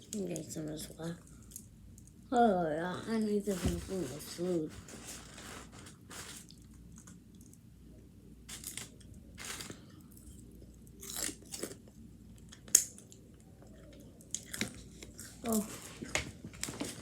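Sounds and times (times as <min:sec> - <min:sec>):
person chewing crunchy food: 0:08.5 - 0:13.1, 0:13.7 - 0:15.6.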